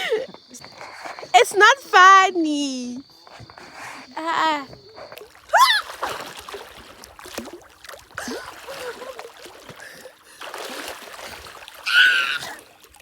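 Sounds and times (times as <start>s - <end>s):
water splashing and sloshing: 3.0s - 13.0s.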